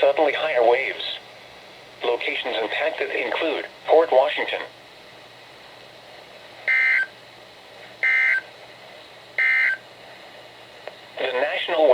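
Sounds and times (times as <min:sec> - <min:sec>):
buzzy warbling data tones: 0:06.7 - 0:07.1.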